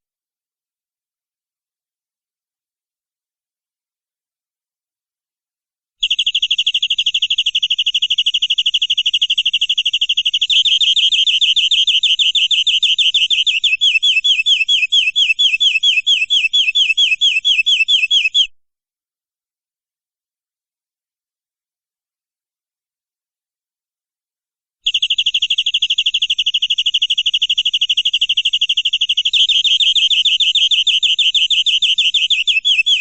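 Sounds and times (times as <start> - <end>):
canary singing a trill: 8.9 - 18.5, 26.0 - 33.0.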